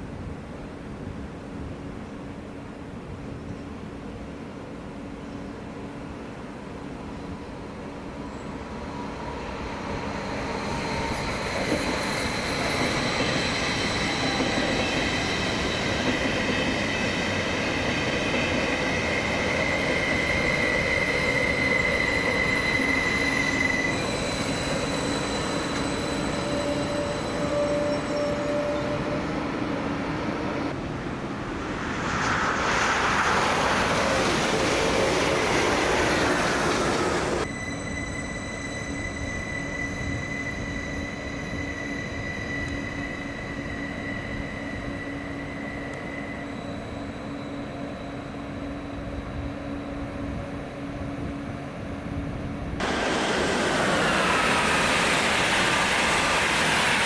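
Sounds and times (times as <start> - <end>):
train wheels rolling on rail: 7.3 - 57.0
high-pitched squeal and ringing: 8.3 - 30.8, 31.6 - 51.0.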